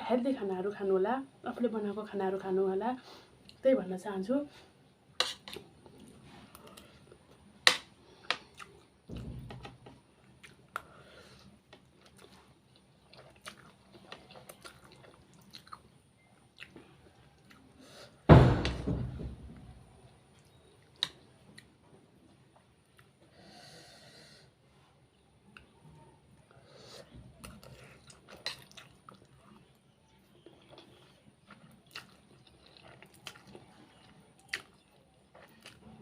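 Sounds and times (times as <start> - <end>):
person chewing food: 5.2 - 9.0, 10.2 - 17.8, 25.4 - 36.0
loud knock: 18.3 - 19.7
dull thump: 18.3 - 19.8.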